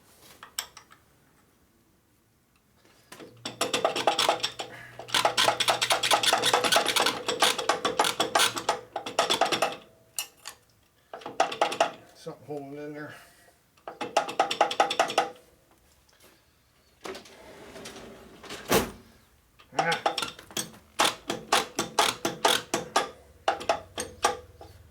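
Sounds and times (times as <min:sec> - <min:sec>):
metal bolts clinking and rattling: 0:03.4 - 0:10.6, 0:19.6 - 0:24.8.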